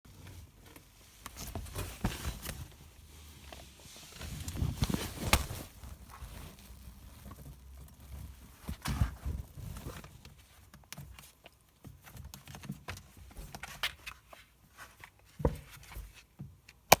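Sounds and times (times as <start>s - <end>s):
soft taps and thumps: 4.2s - 6.6s.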